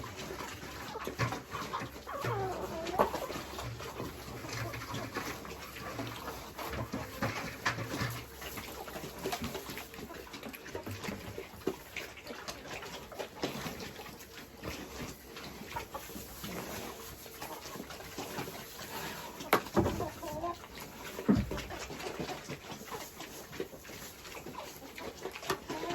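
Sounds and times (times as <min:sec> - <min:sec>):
pigs grunting: 0:00.0 - 0:25.9
knocks and rustles: 0:19.4 - 0:20.2, 0:21.1 - 0:23.3.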